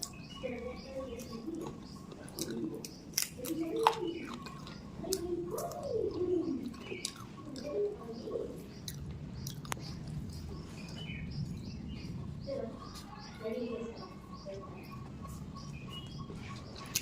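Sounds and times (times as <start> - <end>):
mouth chewing with wet clicks: 0.0 - 5.9, 6.5 - 7.8, 8.7 - 11.6, 16.5 - 17.0
low cooing bird calls: 0.0 - 17.0.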